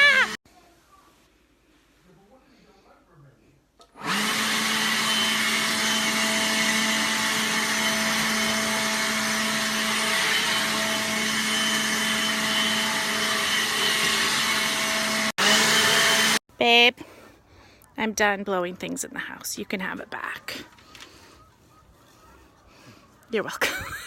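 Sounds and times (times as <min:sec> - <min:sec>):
cordless blower running: 0:03.8 - 0:16.4.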